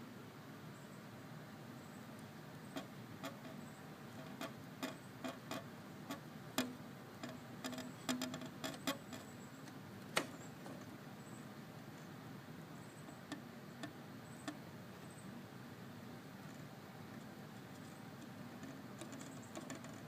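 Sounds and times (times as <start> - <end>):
faint background hiss: 0.0 - 20.0
light clicks and taps: 17.2 - 20.0.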